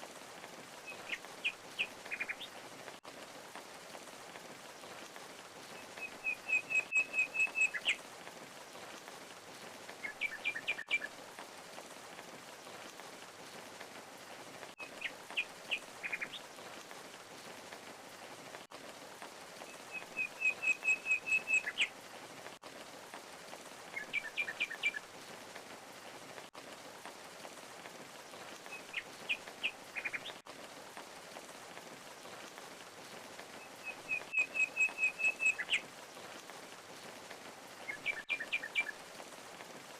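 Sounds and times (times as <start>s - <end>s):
rush of falling water: 0.0s - 39.9s
songbird chirping: 0.8s - 2.6s, 4.7s - 8.0s, 9.6s - 11.2s, 14.2s - 18.2s, 19.6s - 22.2s, 23.9s - 25.1s, 28.2s - 30.4s, 33.2s - 36.5s, 37.8s - 39.0s.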